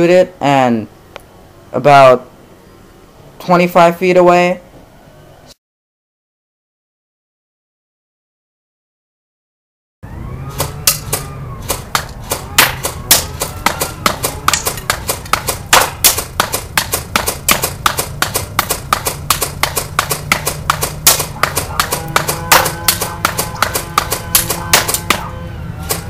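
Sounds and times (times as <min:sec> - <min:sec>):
airsoft rifle shots snapping: 0:10.5 - 0:26.0.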